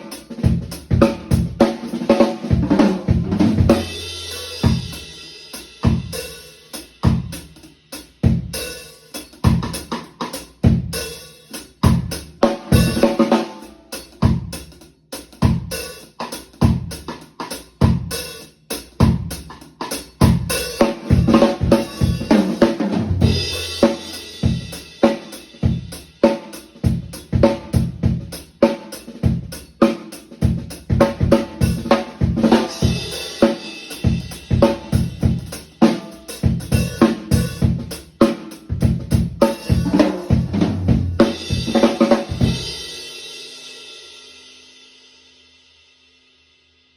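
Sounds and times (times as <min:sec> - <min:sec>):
snare drum: 0:00.0 - 0:07.4, 0:08.2 - 0:10.8, 0:11.5 - 0:14.5, 0:19.0 - 0:42.9.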